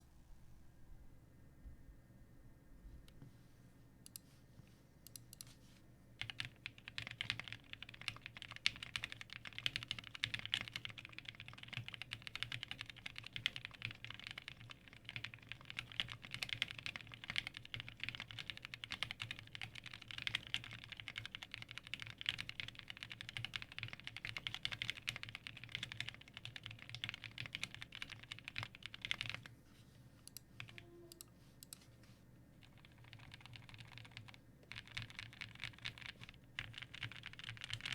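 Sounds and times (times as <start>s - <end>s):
typing on mechanical keyboard: 6.2s - 29.5s, 32.6s - 37.9s.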